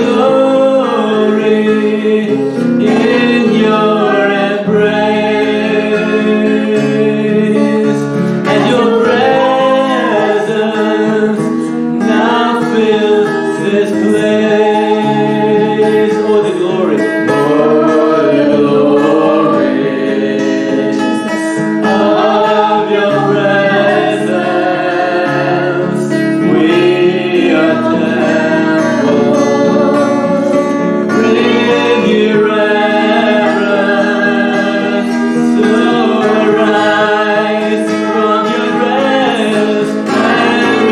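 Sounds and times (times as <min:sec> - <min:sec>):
person singing: 0:00.0 - 0:40.9
band sustained chords: 0:21.8 - 0:40.9.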